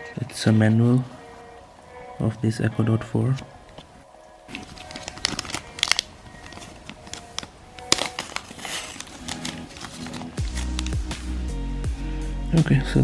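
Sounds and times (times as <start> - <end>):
background music: 0.0 - 13.0
wrapping rustling: 0.1 - 11.4
packaging clicks and taps: 4.5 - 11.3.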